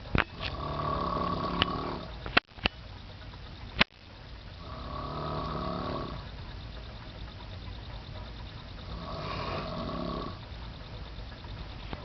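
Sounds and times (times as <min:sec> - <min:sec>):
person snoring loudly: 0:00.4 - 0:02.1, 0:04.6 - 0:06.2, 0:08.9 - 0:10.4
sharp clicks: 0:01.5 - 0:04.1.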